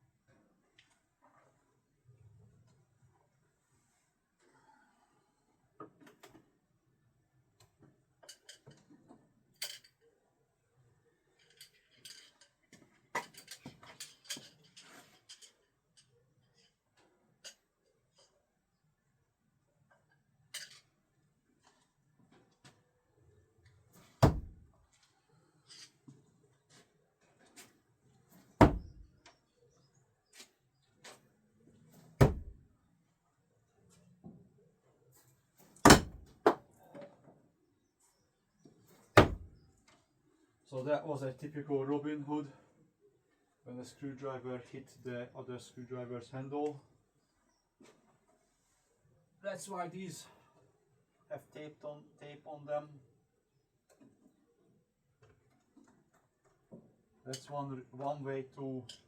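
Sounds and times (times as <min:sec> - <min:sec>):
metal screwdrivers knocking on target: 0:24.2 - 0:24.6, 0:28.6 - 0:29.1, 0:32.2 - 0:32.6, 0:35.8 - 0:36.6.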